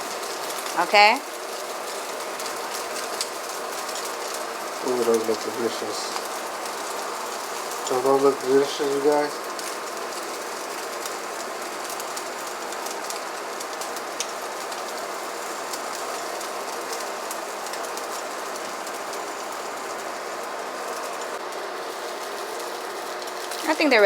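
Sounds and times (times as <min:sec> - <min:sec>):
food sizzling in a frying pan: 0:00.0 - 0:24.0.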